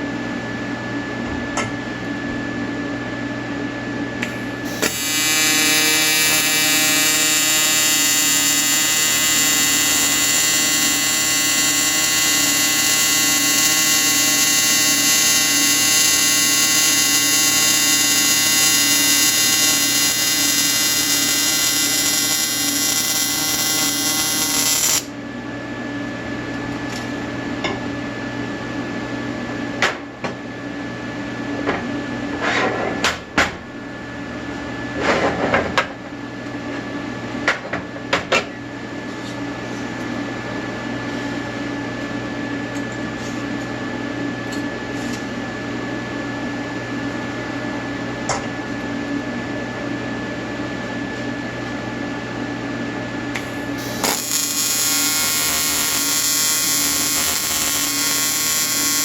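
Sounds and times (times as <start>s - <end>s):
welding arc buzzing: 4.2s - 25.2s, 53.3s - 59.0s.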